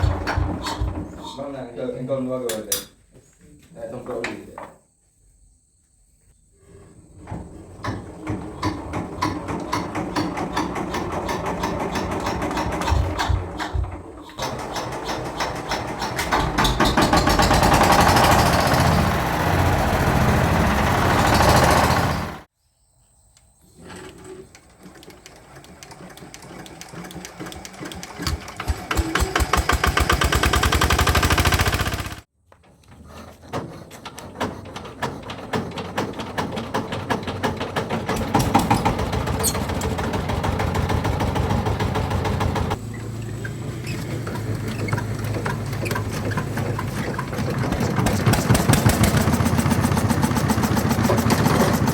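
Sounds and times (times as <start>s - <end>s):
small diesel engine chugging: 0.0s - 1.2s, 8.3s - 22.5s, 25.2s - 32.3s, 34.9s - 51.9s.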